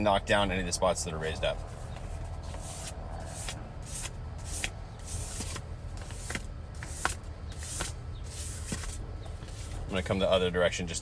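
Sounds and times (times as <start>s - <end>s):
steady low hum: 0.0s - 11.0s
sandpaper swishing over leather: 2.3s - 9.9s.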